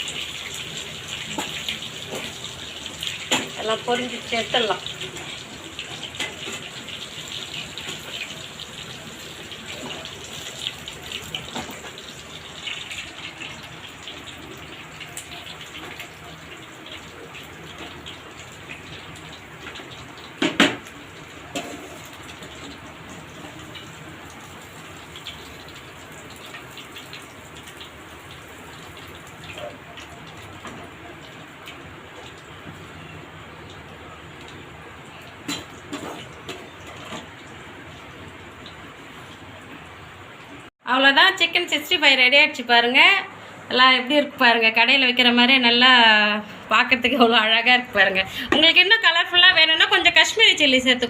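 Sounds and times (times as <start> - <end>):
hot oil sizzling and crackling: 0.0 - 40.8.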